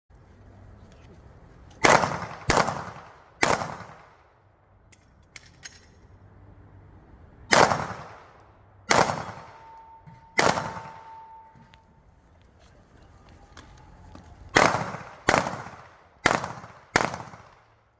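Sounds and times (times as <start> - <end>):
pistol shots echoing: 1.8 - 4.2, 7.5 - 11.5, 14.5 - 17.7
faint steady tone: 9.4 - 14.3.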